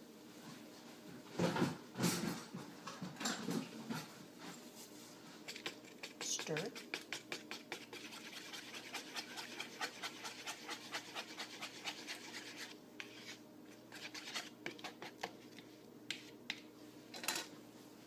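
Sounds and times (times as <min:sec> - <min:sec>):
utensil scraping a bowl: 0:05.4 - 0:16.4.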